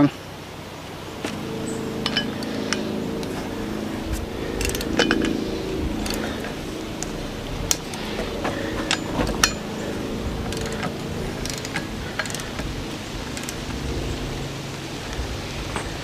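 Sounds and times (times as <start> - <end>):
steady low hum: 0.1 - 16.0
ratchet clicking: 10.4 - 13.9.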